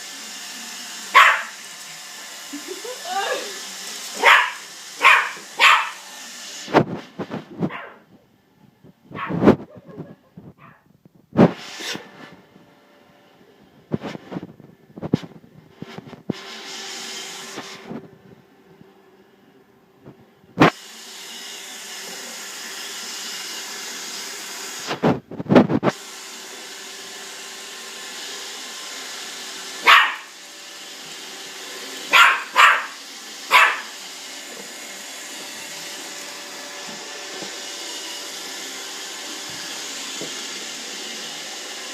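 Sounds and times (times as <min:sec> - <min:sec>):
robot vacuum whirring: 0:00.0 - 0:07.8, 0:25.8 - 0:41.9
dog barking: 0:01.1 - 0:01.6, 0:04.2 - 0:06.0, 0:07.7 - 0:08.0, 0:09.1 - 0:09.4, 0:10.6 - 0:10.8, 0:29.8 - 0:30.3, 0:32.1 - 0:33.9.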